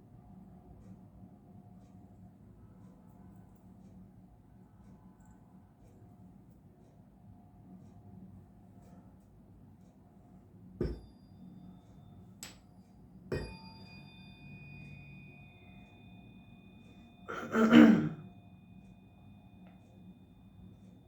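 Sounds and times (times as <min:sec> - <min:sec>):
tuning fork struck dull knock: 0:10.8 - 0:11.3, 0:13.3 - 0:17.2
faint high ring: 0:10.8 - 0:21.0.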